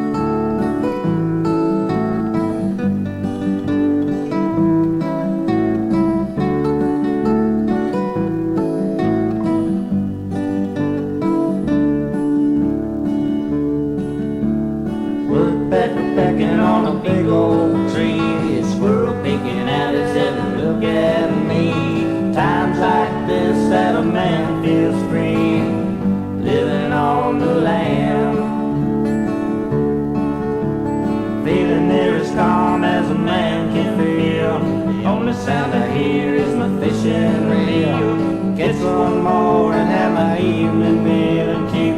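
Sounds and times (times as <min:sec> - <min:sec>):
strummed acoustic guitar: 0:00.0 - 0:41.9
man singing: 0:15.3 - 0:28.9, 0:31.4 - 0:41.9.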